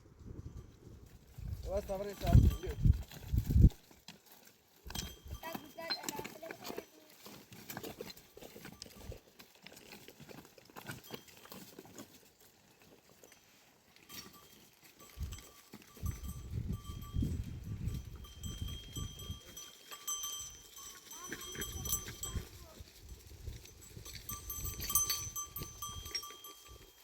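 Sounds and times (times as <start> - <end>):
goat bells clinking: 0.2 - 27.0.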